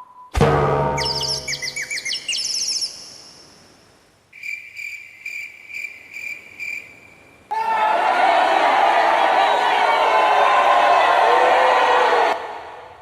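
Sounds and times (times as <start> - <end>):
bird chirps: 0.9 - 3.6
cricket chirping: 1.0 - 7.5.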